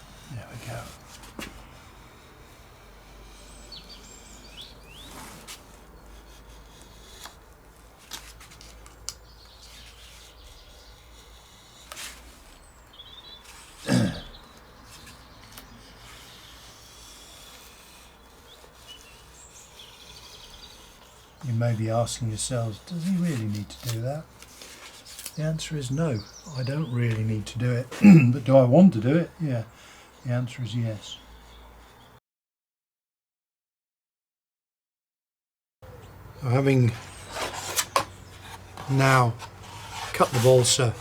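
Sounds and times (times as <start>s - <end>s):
knife scraping wood: 0.0s - 29.2s, 36.6s - 41.0s
faint bird chirps: 2.7s - 5.3s, 12.5s - 21.5s, 25.0s - 27.2s.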